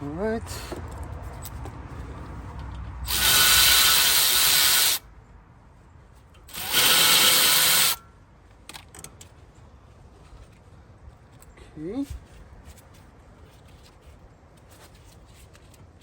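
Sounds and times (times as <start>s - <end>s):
power tool spinning out bolts: 3.1s - 5.0s, 6.5s - 8.0s.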